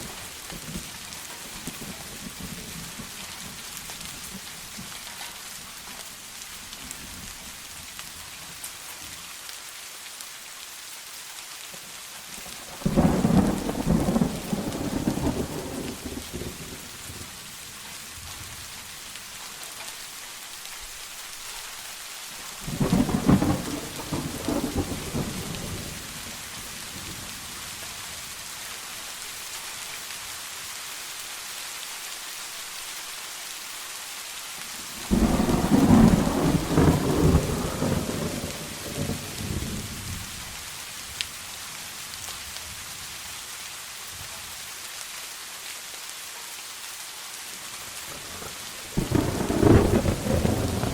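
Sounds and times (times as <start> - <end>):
rain falling: 0.0 - 50.9
thunder rumbling: 12.6 - 17.4, 22.6 - 27.6, 34.9 - 40.5, 48.1 - 50.9.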